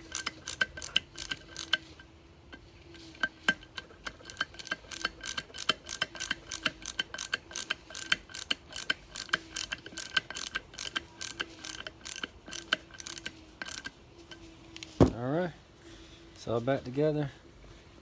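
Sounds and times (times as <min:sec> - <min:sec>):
hand ratchet clicking: 0:00.0 - 0:02.1, 0:02.9 - 0:14.0.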